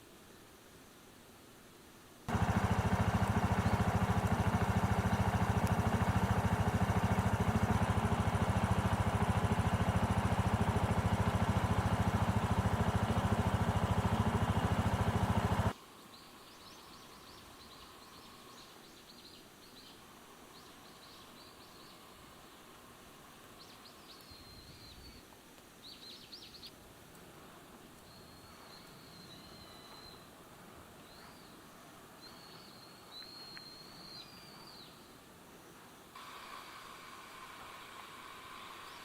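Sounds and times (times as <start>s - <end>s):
small engine running: 2.3s - 15.8s, 36.2s - 39.0s
faint bird chirps: 23.6s - 26.7s, 28.0s - 30.3s, 31.0s - 35.8s.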